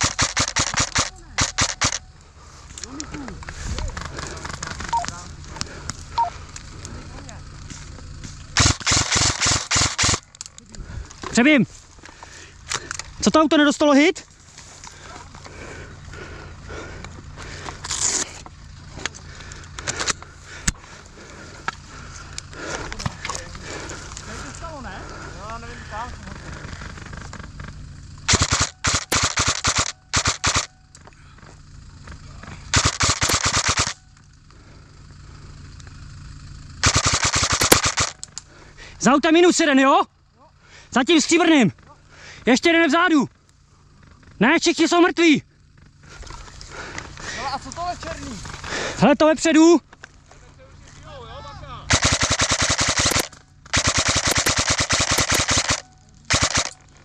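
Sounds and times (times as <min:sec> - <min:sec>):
airsoft gun firing bursts: 0:00.0 - 0:02.1, 0:08.6 - 0:10.3, 0:28.3 - 0:30.7, 0:32.7 - 0:34.0, 0:36.8 - 0:38.2, 0:51.9 - 0:56.8.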